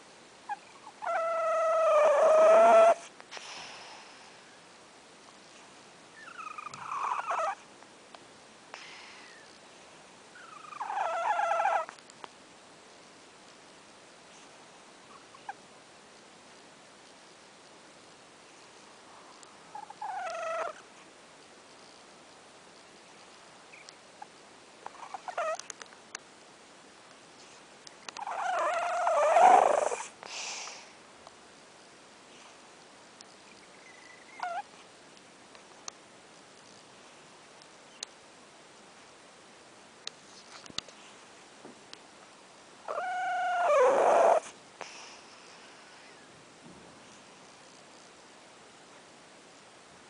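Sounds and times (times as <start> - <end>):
cat snoring: 0.5 - 4.4, 6.2 - 7.6, 10.4 - 11.9, 28.2 - 30.6, 42.9 - 46.1.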